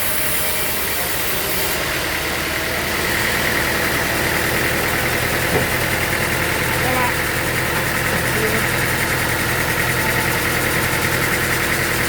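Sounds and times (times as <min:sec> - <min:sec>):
sawmill machinery drone: 0:00.0 - 0:12.0.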